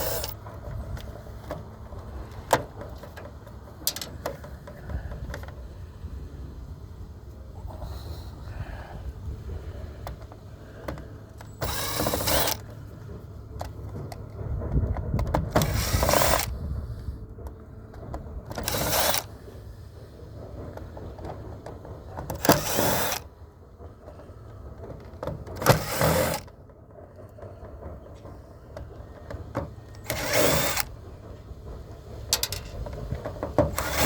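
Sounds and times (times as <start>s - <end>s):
power drill running: 0.0s - 0.4s, 11.6s - 12.6s, 15.6s - 16.5s, 18.6s - 19.3s, 22.4s - 23.2s, 25.7s - 26.5s, 30.0s - 30.9s, 33.8s - 34.0s
low wind rumble: 0.0s - 34.0s.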